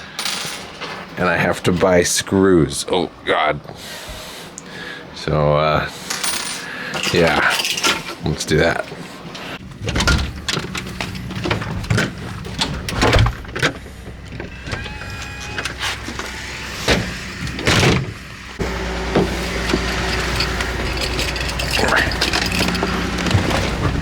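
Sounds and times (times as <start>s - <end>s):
car engine starting and running: 9.6s - 24.0s.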